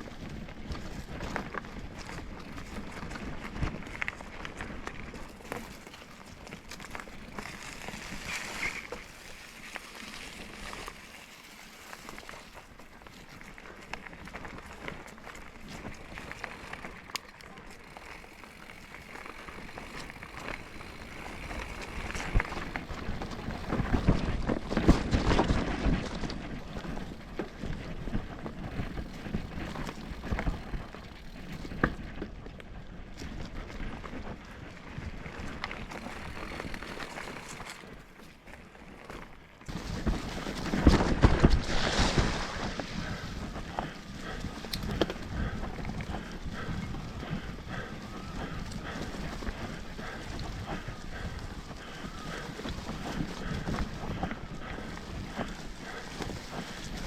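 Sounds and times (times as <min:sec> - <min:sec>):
bike clicks and rattles: 0:00.0 - 0:57.0
tyres rolling on dirt trail: 0:00.0 - 0:57.0
wind buffeting microphone: 0:17.8 - 0:38.0, 0:39.7 - 0:57.0.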